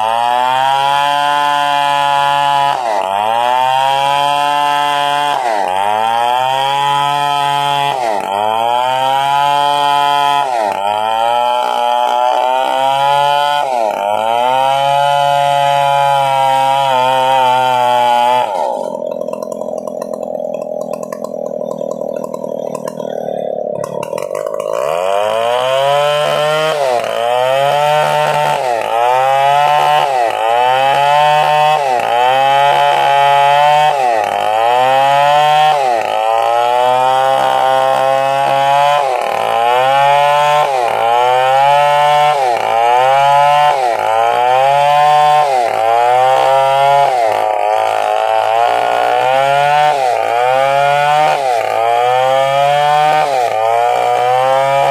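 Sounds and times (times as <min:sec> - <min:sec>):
chainsaw cutting through trunk: 0:00.0 - 0:54.9.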